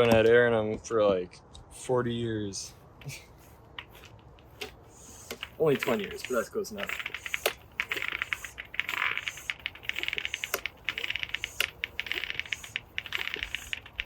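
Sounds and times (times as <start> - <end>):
hand bicycle pump strokes: 3.8 - 14.0.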